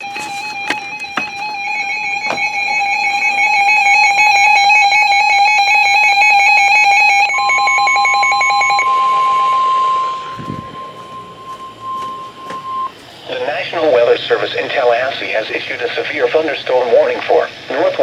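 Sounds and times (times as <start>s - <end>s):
music with held high note: 0.0s - 13.3s
steady warning alarm tone: 0.0s - 18.0s.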